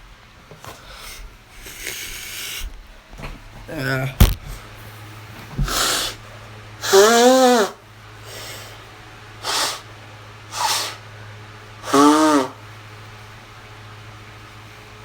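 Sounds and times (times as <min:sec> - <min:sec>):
man snorting through nose: 0:00.9 - 0:02.7, 0:05.6 - 0:06.2, 0:06.8 - 0:08.8, 0:09.4 - 0:09.9, 0:10.5 - 0:11.1, 0:11.8 - 0:12.6
man sneezing: 0:06.8 - 0:07.8, 0:11.8 - 0:12.6.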